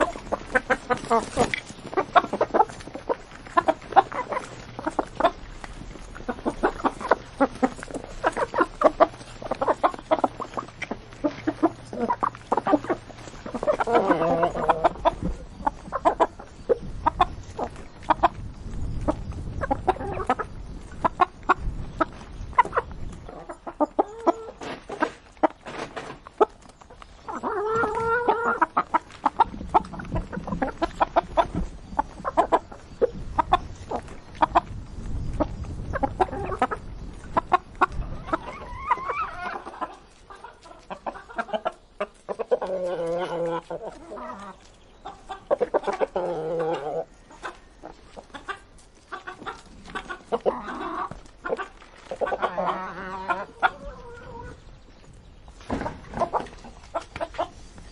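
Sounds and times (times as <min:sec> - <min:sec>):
chicken drawn-out calls: 0:00.0 - 0:54.8
chickens clucking: 0:00.0 - 0:57.9.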